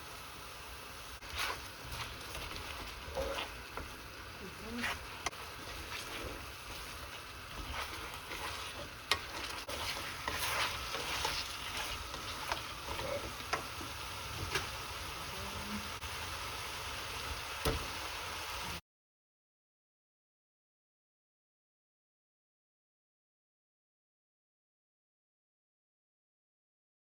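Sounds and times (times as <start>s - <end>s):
food sizzling in a hot pan: 0.0s - 18.8s.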